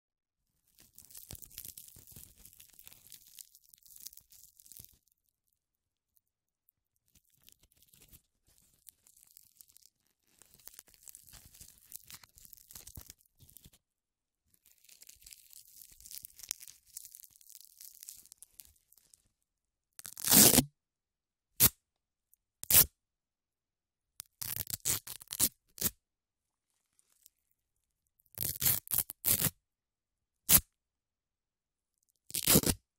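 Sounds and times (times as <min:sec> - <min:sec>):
velcro strips tearing: 0:00.8 - 0:05.0, 0:14.7 - 0:18.6, 0:20.0 - 0:20.7, 0:22.6 - 0:22.9, 0:24.2 - 0:26.0, 0:28.4 - 0:29.6, 0:30.5 - 0:30.7, 0:32.3 - 0:32.8.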